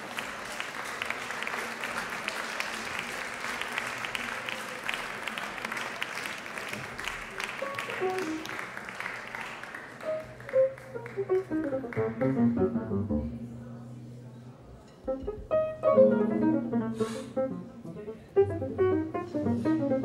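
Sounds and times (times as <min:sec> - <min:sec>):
audience applauding: 0:00.0 - 0:12.4.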